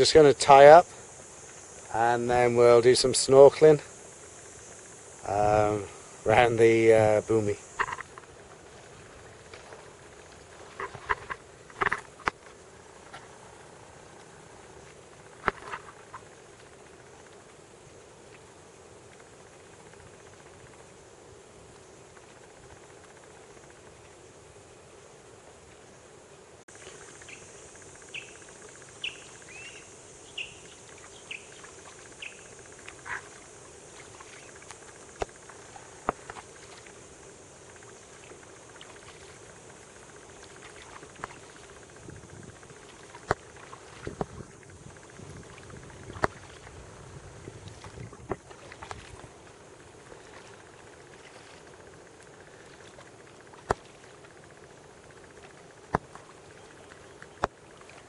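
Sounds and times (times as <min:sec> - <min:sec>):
faint high hiss: 0:00.0 - 0:58.0
bird chirping: 0:27.2 - 0:32.5
kayak paddle knocks and splashes: 0:42.8 - 0:44.5, 0:45.2 - 0:46.8, 0:47.6 - 0:49.3, 0:52.7 - 0:54.2, 0:55.5 - 0:56.4.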